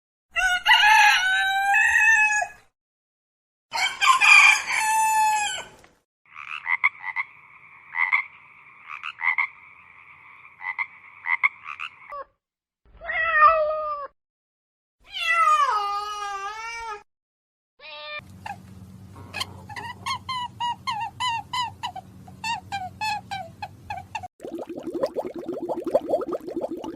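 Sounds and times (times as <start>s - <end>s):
rooster crowing: 0.3s - 2.7s, 3.7s - 5.8s.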